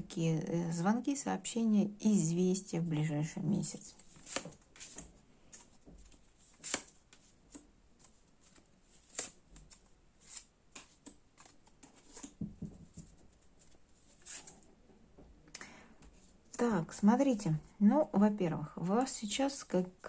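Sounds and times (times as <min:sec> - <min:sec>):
cards snapping and tapping: 0:04.2 - 0:07.6, 0:09.0 - 0:12.4.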